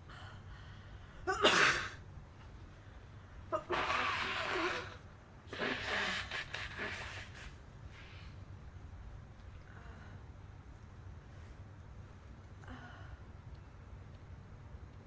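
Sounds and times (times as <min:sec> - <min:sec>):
girl sneezing: 0:03.6 - 0:07.1.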